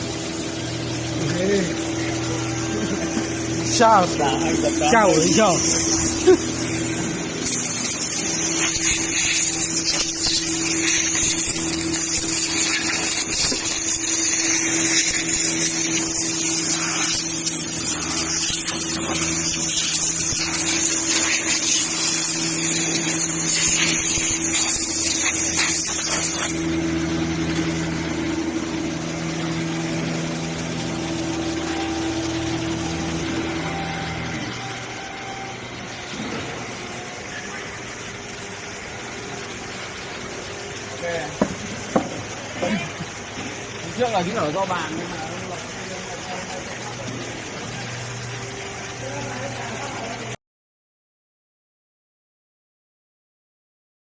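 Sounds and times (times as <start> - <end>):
wood router motor hum and whine: 0.0 - 25.8, 26.5 - 42.4
loud high hiss: 1.1 - 26.7.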